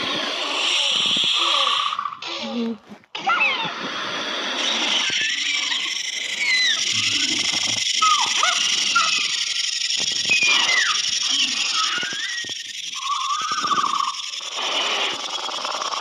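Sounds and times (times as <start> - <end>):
creature squeaking chirps: 4.6 - 16.0.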